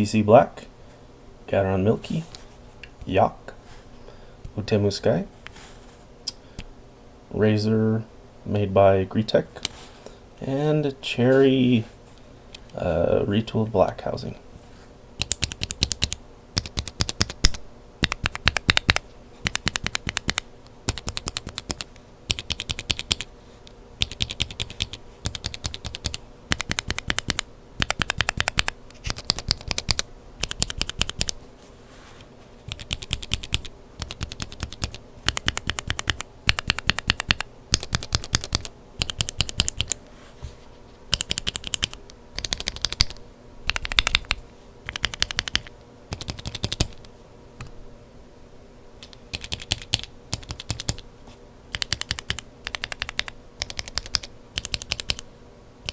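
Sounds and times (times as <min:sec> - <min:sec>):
mechanical keyboard clacking: 0:15.2 - 0:23.3, 0:24.0 - 0:31.4, 0:32.7 - 0:40.0, 0:41.1 - 0:47.0, 0:49.3 - 0:51.0, 0:51.7 - 0:55.2.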